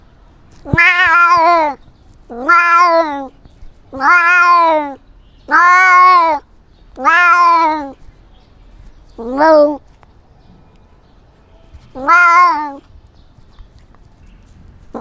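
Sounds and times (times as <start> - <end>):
cat meowing: 0.6 - 8.0, 9.2 - 9.8, 11.9 - 12.9.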